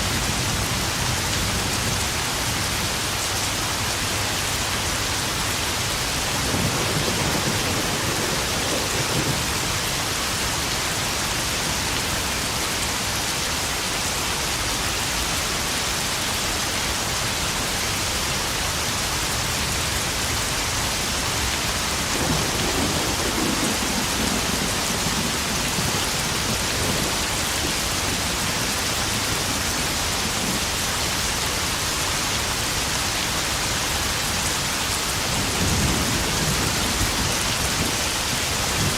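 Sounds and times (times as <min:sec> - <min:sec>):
rain pattering on puddles: 0:00.1 - 0:38.9
thunder rumbling: 0:06.2 - 0:10.1, 0:21.9 - 0:30.8, 0:35.3 - 0:38.9.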